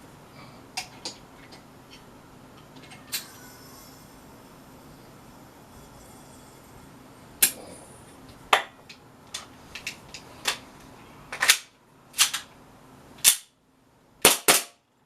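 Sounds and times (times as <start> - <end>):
airsoft pistol firing: 14.2 - 14.8.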